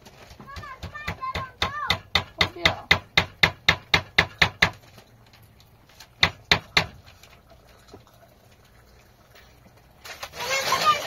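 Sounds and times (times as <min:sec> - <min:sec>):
sharp knocks: 0:00.4 - 0:04.8, 0:06.2 - 0:07.0.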